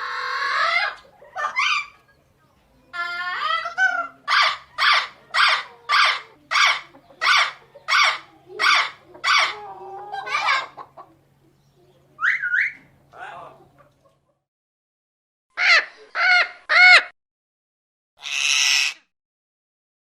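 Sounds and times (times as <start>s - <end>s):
parrot calling: 0.0s - 2.0s, 2.9s - 10.8s, 12.2s - 13.6s, 15.6s - 17.1s, 18.2s - 19.1s.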